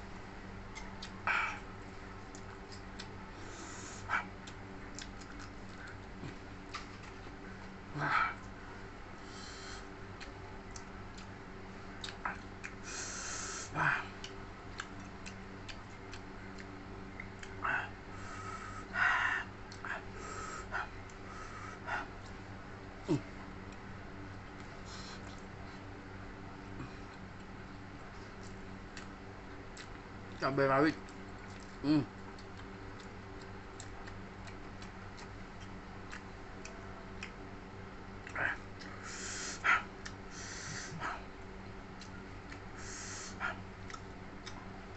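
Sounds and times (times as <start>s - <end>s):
low steady hum: 0.0s - 44.9s
wet chewing and lip smacks: 0.7s - 3.2s, 4.1s - 7.8s, 10.1s - 12.8s, 14.2s - 17.8s, 19.6s - 20.1s, 24.5s - 26.0s, 26.9s - 37.5s, 38.1s - 40.4s, 41.9s - 44.8s
sharp breaths: 42.8s - 43.6s.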